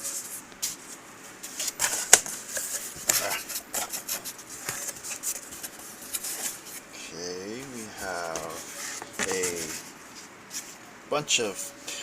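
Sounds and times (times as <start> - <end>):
package scrapes rustles and clicks: 1.5 - 6.8, 8.0 - 9.9.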